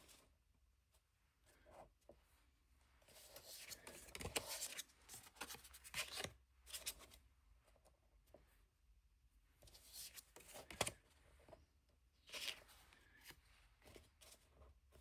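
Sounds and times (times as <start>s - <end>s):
cards and paper rustling: 3.1s - 7.2s, 9.7s - 11.6s, 12.2s - 15.0s.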